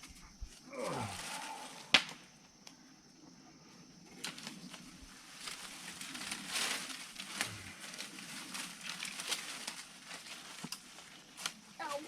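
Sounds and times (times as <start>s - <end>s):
branches rustling and crackling: 0.0s - 2.9s, 3.7s - 12.0s
twigs snapping: 0.8s - 2.8s, 4.2s - 11.6s.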